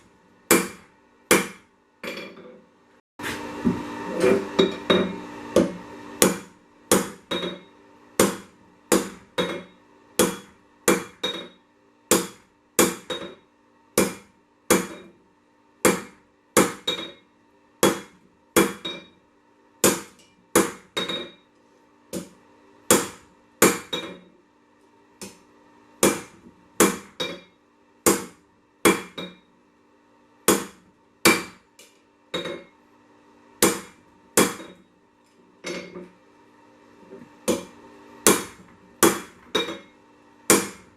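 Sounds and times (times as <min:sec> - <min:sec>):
hammer striking steel on anvil: 0:00.5 - 0:02.4, 0:04.2 - 0:13.4, 0:14.0 - 0:15.1, 0:17.8 - 0:19.2, 0:19.8 - 0:21.4, 0:26.0 - 0:29.4, 0:30.5 - 0:32.7, 0:33.6 - 0:34.8, 0:37.5 - 0:39.9, 0:40.5 - 0:40.8.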